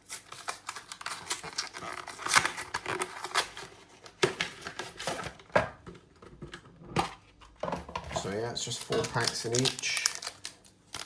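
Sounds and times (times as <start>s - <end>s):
wrapping crinkling and tearing: 0.0s - 5.3s, 8.2s - 11.0s.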